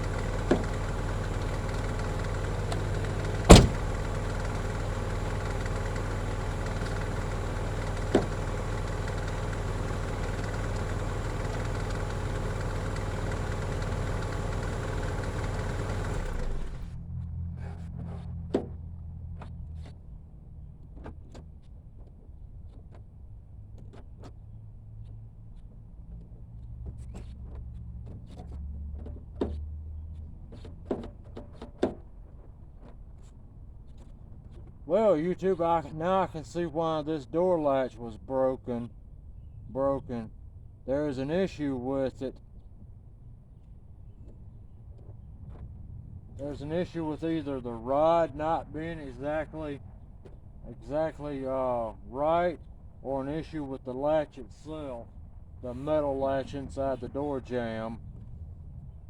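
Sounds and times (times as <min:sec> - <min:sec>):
car engine idling hum: 0:00.0 - 0:20.2, 0:39.0 - 0:59.0
car door handle and latch clicks: 0:03.5 - 0:04.1.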